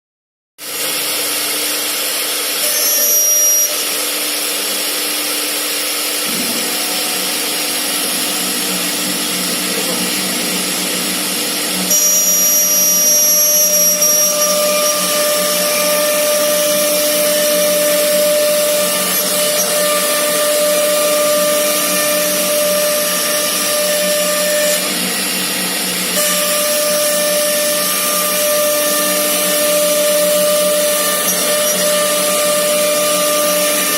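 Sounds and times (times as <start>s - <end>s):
router spindles whining: 0.6s - 33.9s.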